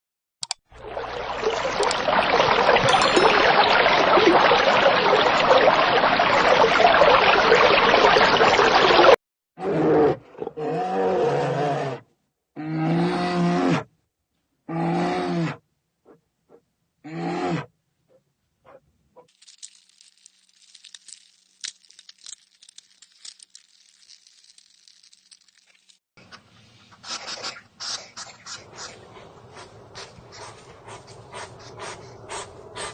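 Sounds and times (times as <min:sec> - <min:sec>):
rustling: 0:19.2 - 0:29.0.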